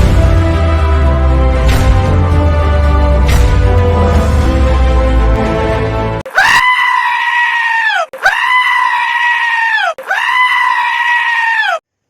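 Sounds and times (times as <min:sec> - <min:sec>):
long high animal cries: 0:06.3 - 0:11.8.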